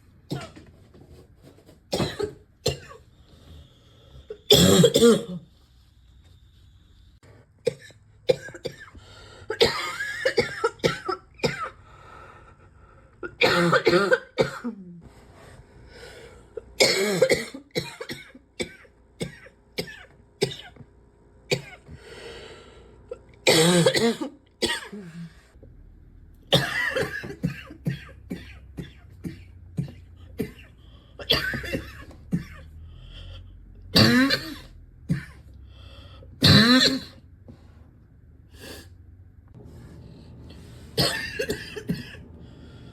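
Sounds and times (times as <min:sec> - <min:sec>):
person coughing: 0:00.3 - 0:00.7, 0:01.9 - 0:03.0, 0:04.3 - 0:05.5, 0:07.7 - 0:11.8, 0:13.2 - 0:15.0, 0:16.8 - 0:20.8, 0:21.5 - 0:22.0, 0:23.2 - 0:25.4, 0:26.5 - 0:32.8, 0:34.0 - 0:35.5, 0:36.4 - 0:37.2, 0:41.0 - 0:42.2
throat clearing: 0:34.0 - 0:35.5.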